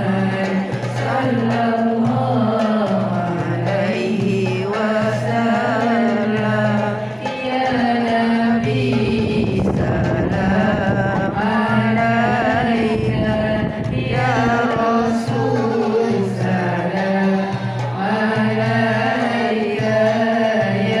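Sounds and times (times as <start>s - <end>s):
devotional chant singing: 0.0s - 21.0s
low accompaniment: 0.0s - 21.0s.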